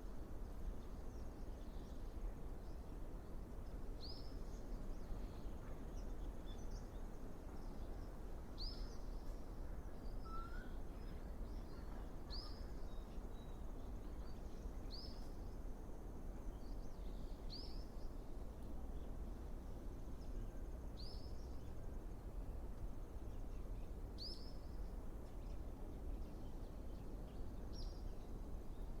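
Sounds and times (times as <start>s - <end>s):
low outdoor background rush: 0.0s - 29.0s
bird short high call: 10.2s - 10.8s.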